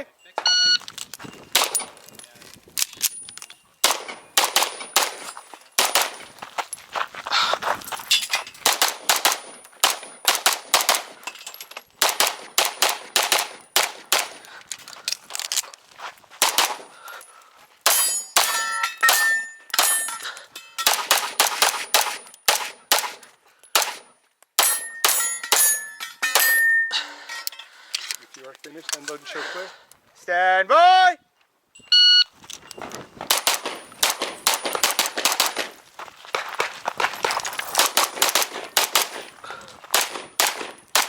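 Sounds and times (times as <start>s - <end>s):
pistol shots: 3.8s - 6.2s, 8.6s - 11.2s, 12.0s - 14.4s, 16.4s - 16.8s, 20.8s - 23.2s, 23.8s - 24.0s, 33.3s - 35.8s, 37.8s - 39.3s, 39.9s - 41.0s
metallic ringing clangs: 17.9s - 20.9s, 24.6s - 27.7s.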